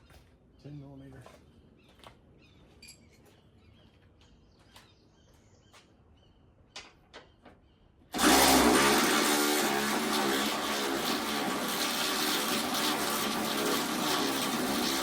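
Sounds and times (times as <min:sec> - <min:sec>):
power tool motor running: 0:08.1 - 0:15.0.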